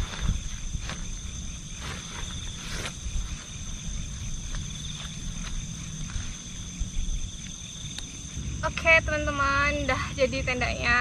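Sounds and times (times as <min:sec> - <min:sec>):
insect chorus shrilling: 0:00.0 - 0:11.0
low rumble: 0:05.8 - 0:11.0.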